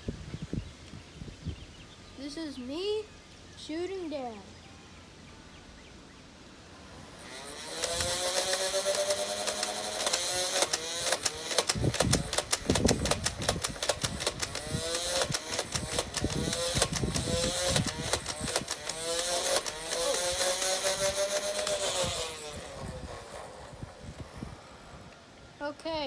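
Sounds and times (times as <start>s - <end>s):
toy blaster flywheels whining: 6.7s - 25.4s.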